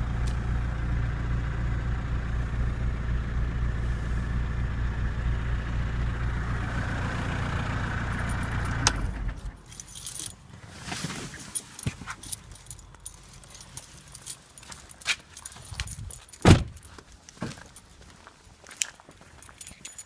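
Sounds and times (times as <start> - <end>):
diesel engine idling: 0.0 - 10.3
keys jangling: 8.1 - 8.8, 9.4 - 10.5, 11.3 - 20.0.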